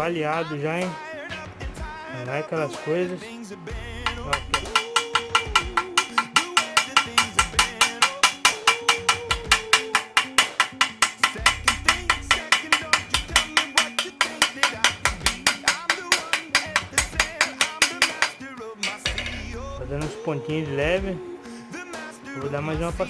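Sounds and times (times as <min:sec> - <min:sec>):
background music: 0:00.0 - 0:23.0
sharp clicking beat: 0:04.0 - 0:19.6.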